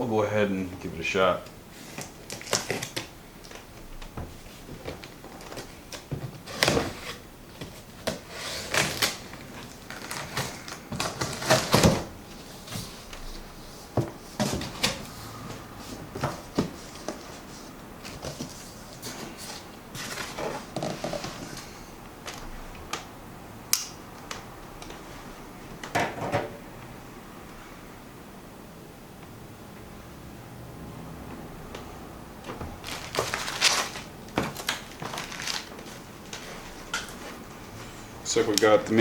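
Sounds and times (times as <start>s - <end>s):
cardboard and packing rustling: 1.7s - 23.0s, 32.4s - 39.0s.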